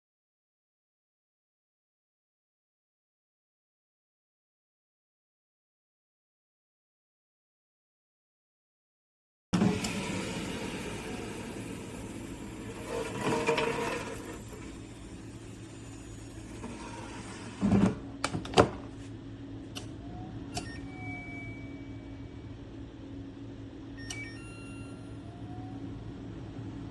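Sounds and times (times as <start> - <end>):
air fryer fan humming: 9.6 - 26.9.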